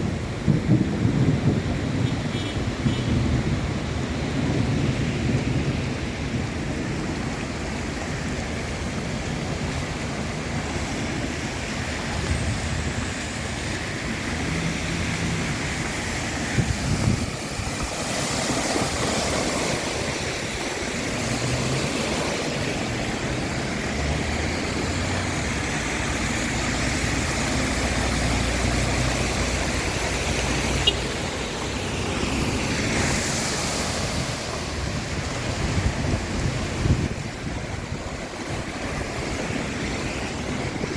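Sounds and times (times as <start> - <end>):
wind buffeting microphone: 0.0 - 10.6, 11.8 - 21.8, 33.8 - 40.9
rain and rushing water: 0.0 - 40.9.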